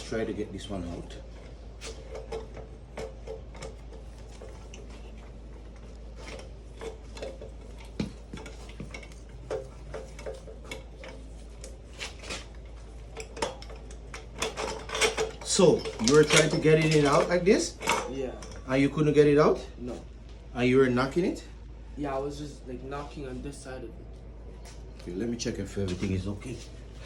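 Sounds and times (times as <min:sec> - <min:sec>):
metal tools clinking on axle: 0:12.5 - 0:18.7.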